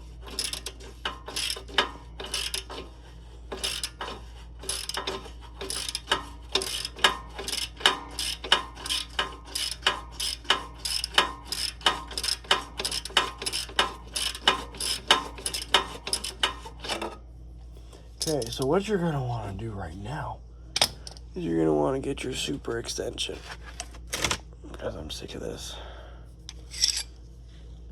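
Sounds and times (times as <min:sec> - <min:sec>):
ratchet wrench clicking: 0:00.3 - 0:02.8, 0:03.5 - 0:16.6.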